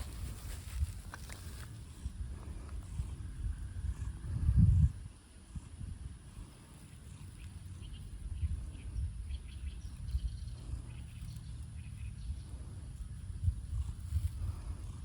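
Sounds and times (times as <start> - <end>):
wind rumble on microphone: 0.0 - 15.0
faint bird chirps: 6.8 - 13.5.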